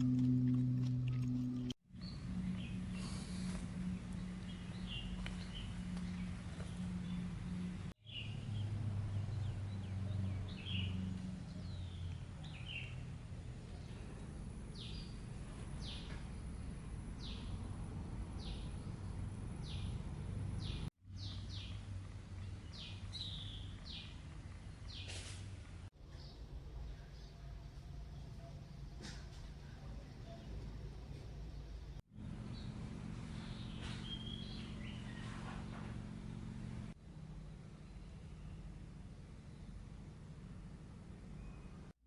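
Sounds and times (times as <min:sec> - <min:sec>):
steady low hum: 0:00.0 - 0:08.0
small birds chirping: 0:00.0 - 0:17.7, 0:18.3 - 0:27.6, 0:28.2 - 0:35.9.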